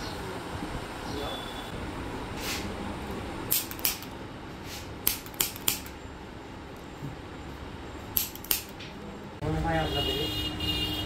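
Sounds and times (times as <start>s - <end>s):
short sharp clicks: 3.5s - 4.1s, 5.0s - 6.0s, 8.2s - 8.8s.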